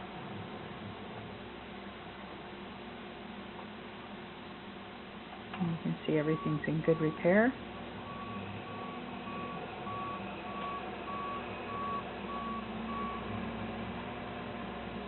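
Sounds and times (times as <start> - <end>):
diesel engine running: 0.0 - 15.0
backup alarm beeping: 6.2 - 7.4, 8.1 - 13.2.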